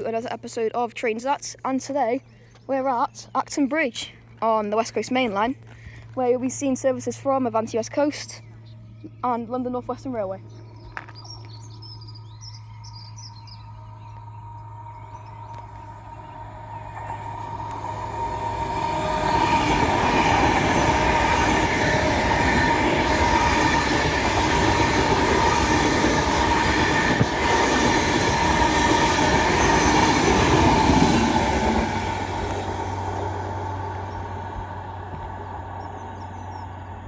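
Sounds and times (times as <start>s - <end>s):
train wheels rushing on rail: 13.6s - 37.0s.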